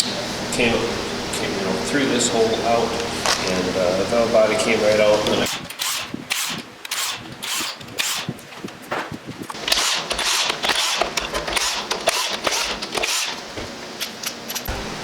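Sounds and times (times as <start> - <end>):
metal parts scraping and clattering: 9.4 - 13.4.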